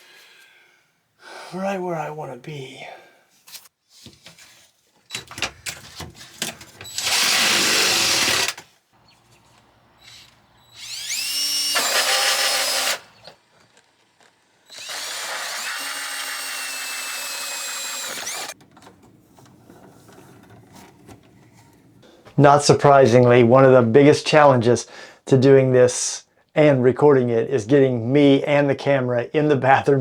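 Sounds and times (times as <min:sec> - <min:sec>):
power drill running: 0:06.8 - 0:08.6, 0:10.0 - 0:13.4, 0:14.6 - 0:18.6.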